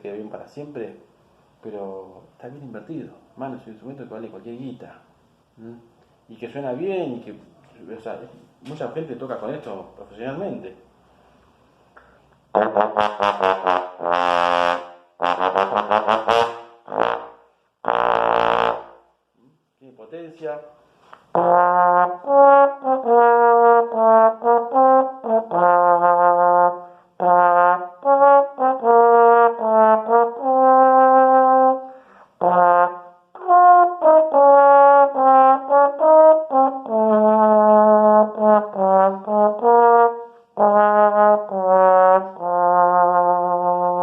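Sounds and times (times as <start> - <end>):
trombone melody: 12.5 - 19.1, 21.3 - 44.0.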